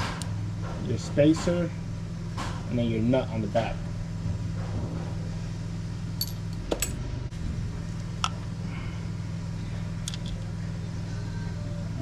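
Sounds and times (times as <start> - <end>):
steady low hum: 0.0 - 12.0
metal hardware clinking: 6.2 - 7.0.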